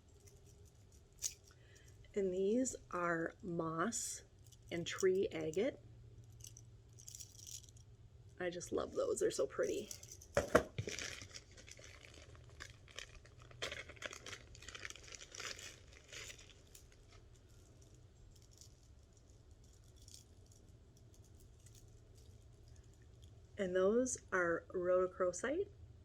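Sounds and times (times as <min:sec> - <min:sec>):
light clicks of beads: 0:00.0 - 0:02.1, 0:04.2 - 0:07.9, 0:09.6 - 0:10.4, 0:11.0 - 0:23.4
packaging crinkling: 0:09.7 - 0:18.9.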